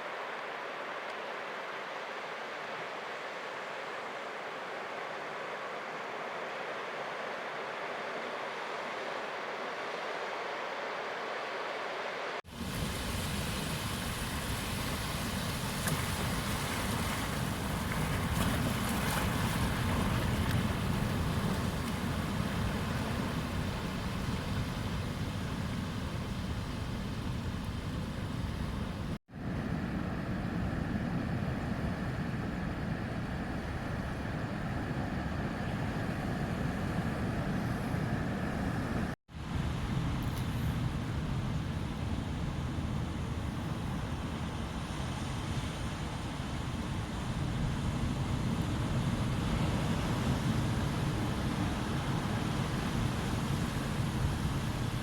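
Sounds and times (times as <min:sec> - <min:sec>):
sea surf rumbling: 0:00.0 - 0:40.2.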